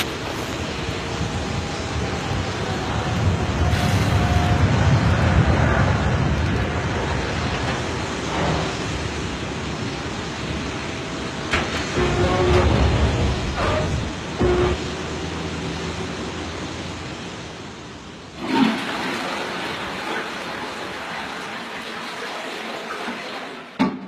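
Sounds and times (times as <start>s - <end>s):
water gushing: 0.0s - 23.8s
thump: 23.8s - 24.0s.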